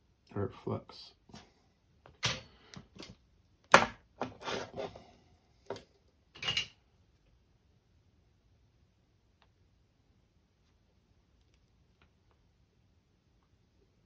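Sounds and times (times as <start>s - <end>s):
tools knocking on workbench: 3.7s - 4.4s.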